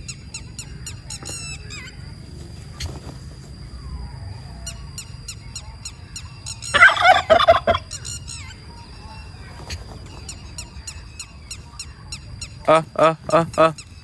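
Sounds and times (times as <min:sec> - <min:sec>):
faint high chirps: 0:00.0 - 0:14.0
turkey gobbling: 0:05.4 - 0:12.2.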